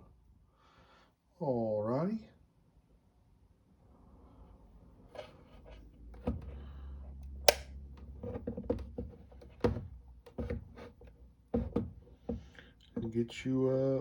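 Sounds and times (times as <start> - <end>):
clicks and knocks on bench: 11.6 - 12.6.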